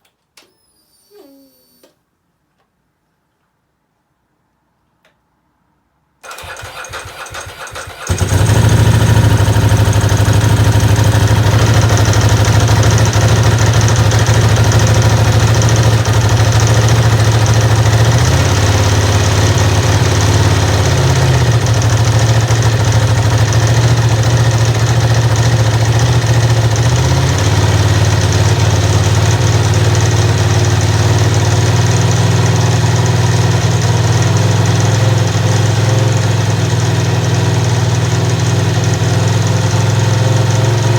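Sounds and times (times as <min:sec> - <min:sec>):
starter motor cranking: 0:06.2 - 0:09.0
motorcycle engine idling: 0:06.4 - 0:40.9.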